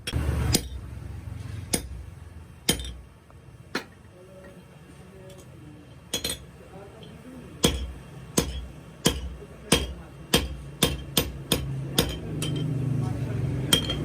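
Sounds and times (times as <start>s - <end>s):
hammer ringing on axe head: 7.6s - 12.8s, 13.7s - 14.0s.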